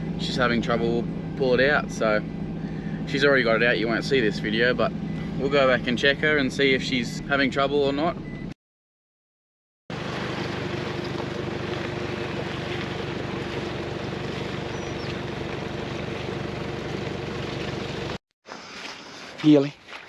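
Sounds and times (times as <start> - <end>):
vehicle engine running: 0.0 - 8.4, 9.9 - 18.2
wind and travel noise: 9.9 - 19.6.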